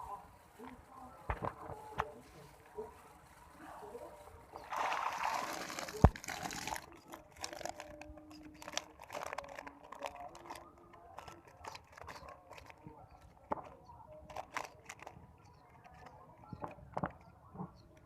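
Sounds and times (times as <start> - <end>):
small clicks and crinkling: 0.0 - 18.0
water pouring and splashing: 4.4 - 7.9.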